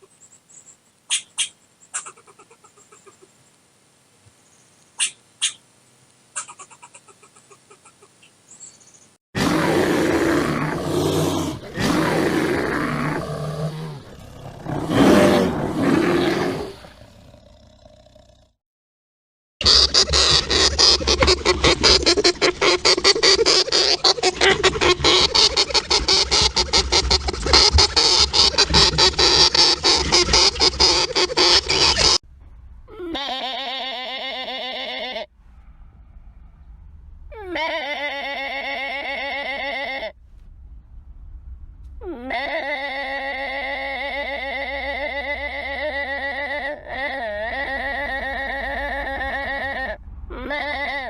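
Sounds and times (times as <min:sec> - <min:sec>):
big cat roaring: 0:09.4 - 0:18.6.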